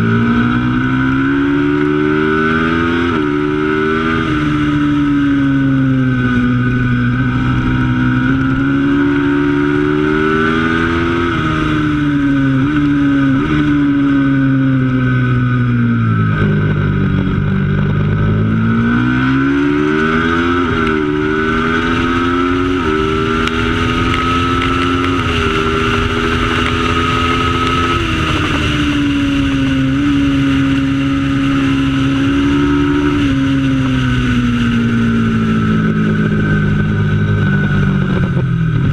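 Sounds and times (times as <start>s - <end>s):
racing motorcycle engine revving: 0.0s - 38.9s.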